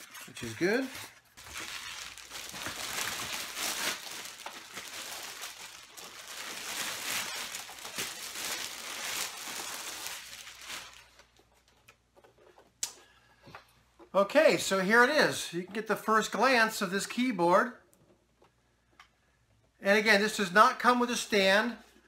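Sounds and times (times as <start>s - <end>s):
plastic wrap crinkling: 0.0s - 12.1s.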